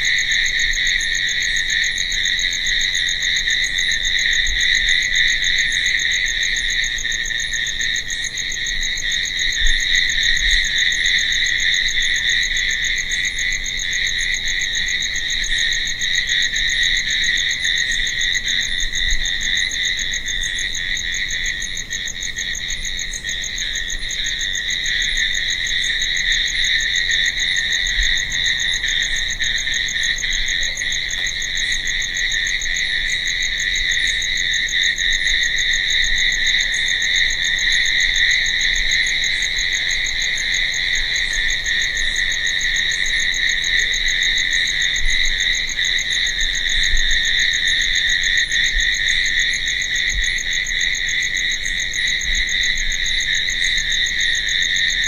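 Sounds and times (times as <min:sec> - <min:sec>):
crickets chirping: 0:00.0 - 0:55.0.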